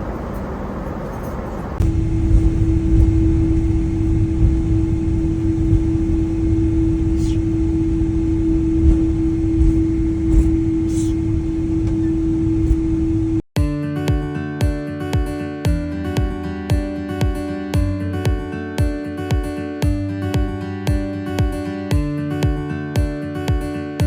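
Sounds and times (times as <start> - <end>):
vehicle rumble from inside: 0.0 - 13.4
mid-pitched hum: 0.0 - 13.5.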